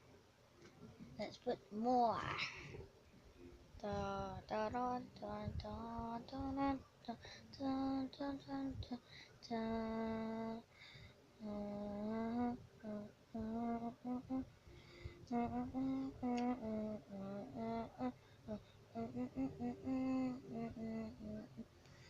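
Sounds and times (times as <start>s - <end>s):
woman singing: 3.8s - 10.7s, 11.4s - 14.5s, 15.2s - 21.6s.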